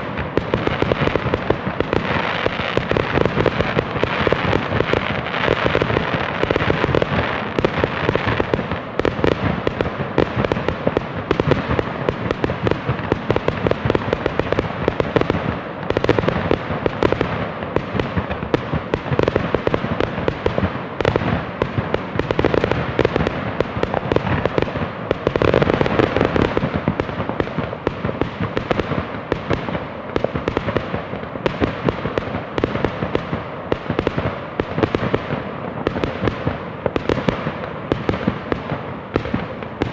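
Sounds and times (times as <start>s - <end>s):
fireworks popping and crackling: 0.0s - 39.9s.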